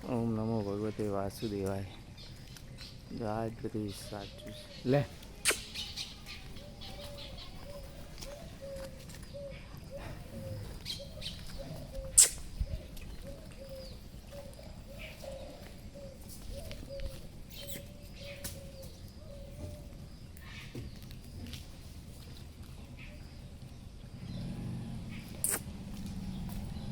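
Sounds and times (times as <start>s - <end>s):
sharp clicks: 5.4s - 5.8s
bird cooing: 5.4s - 20.0s.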